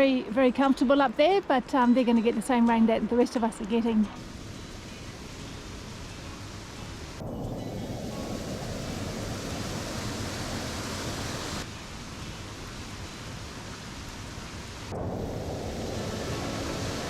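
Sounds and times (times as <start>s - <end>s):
steady rushing outdoor noise: 4.2s - 17.0s.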